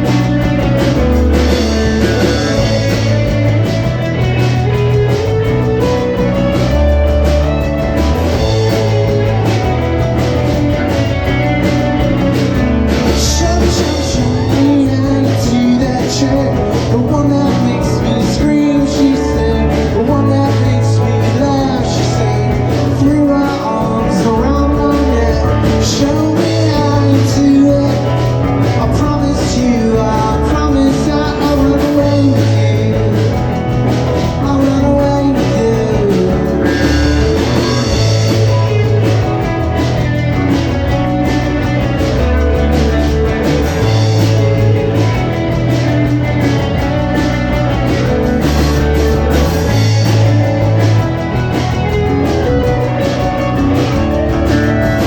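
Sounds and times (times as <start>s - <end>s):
person singing: 0.0s - 10.0s, 11.2s - 40.0s
bass line: 0.0s - 55.0s
drums: 0.0s - 55.0s
guitar: 0.0s - 55.0s.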